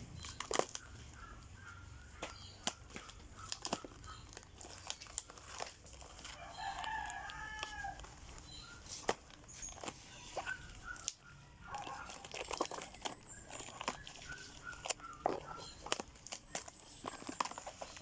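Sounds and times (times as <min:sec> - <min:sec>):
plastic packaging crinkling: 0:00.0 - 0:18.0
rooster crowing: 0:06.3 - 0:08.3.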